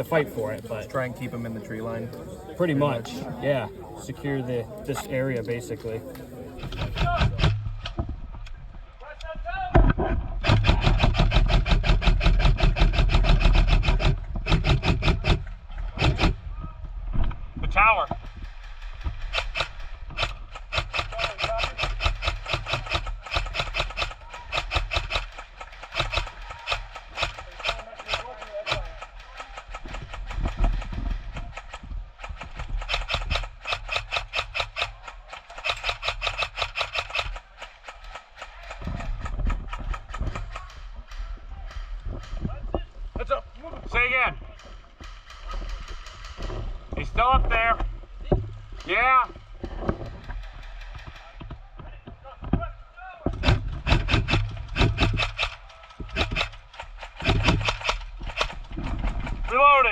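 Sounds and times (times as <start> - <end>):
airsoft rifle firing bursts: 10.4 - 16.4, 18.2 - 42.4, 45.0 - 46.7, 50.0 - 51.4, 53.4 - 59.9.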